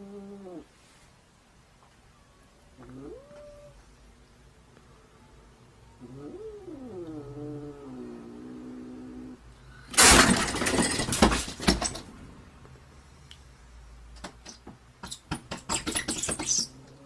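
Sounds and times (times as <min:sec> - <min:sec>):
things falling with a crash: 0:09.9 - 0:12.2
sharp clattering knocks: 0:10.0 - 0:12.2, 0:14.2 - 0:16.6.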